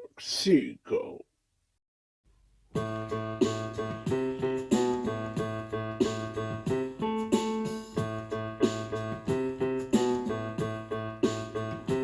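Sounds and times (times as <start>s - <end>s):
piano-like keyboard music: 2.8s - 12.0s.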